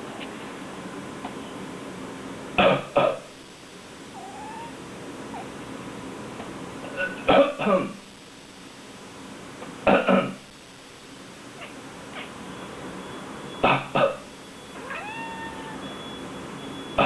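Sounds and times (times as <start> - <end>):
person coughing: 2.6 - 3.3, 6.9 - 8.0, 13.6 - 14.2
cat meowing: 4.2 - 4.8, 14.8 - 16.0.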